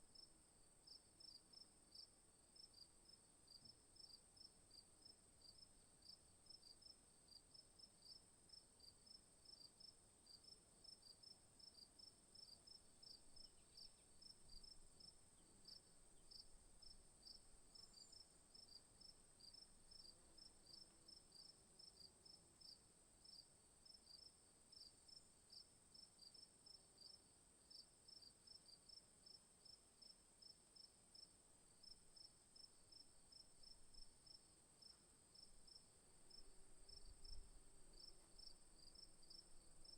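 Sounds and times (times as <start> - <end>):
crickets chirping: 9.5 - 23.4, 30.8 - 39.9.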